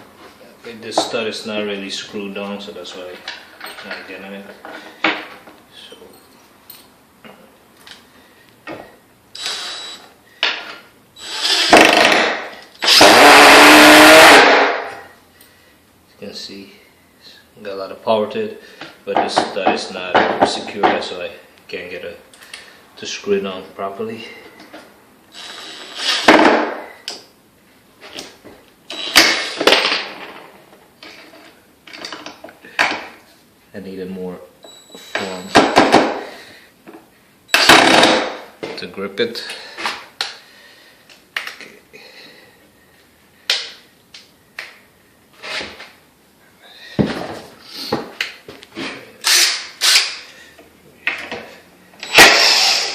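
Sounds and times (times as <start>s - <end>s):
impact driver running: 11.2s - 14.8s, 52.0s - 52.9s.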